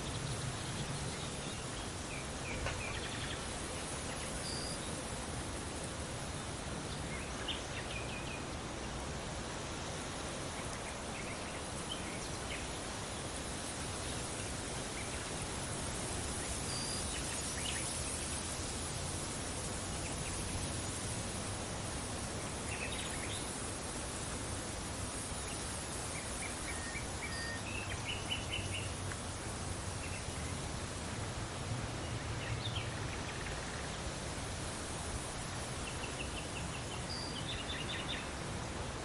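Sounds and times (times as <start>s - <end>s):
wind: 0.0s - 39.0s.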